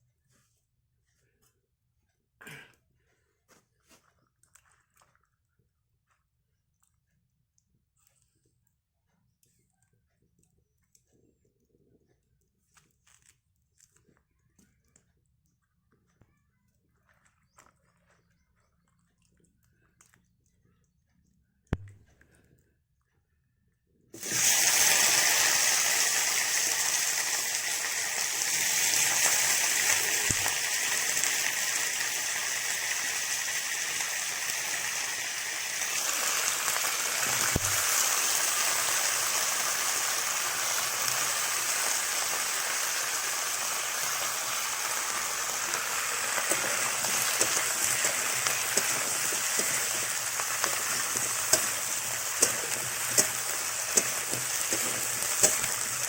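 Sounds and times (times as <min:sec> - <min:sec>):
food sizzling in hot oil: 0:24.2 - 0:56.0.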